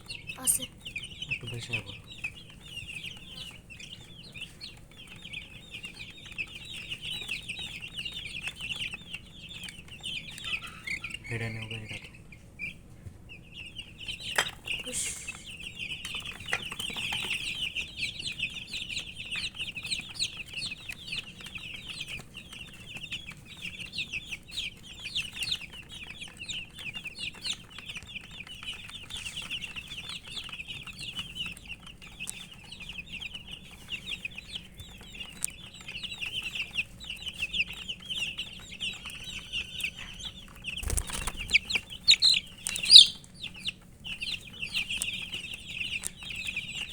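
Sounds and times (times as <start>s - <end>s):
baby chicks peeping: 0.0s - 46.9s.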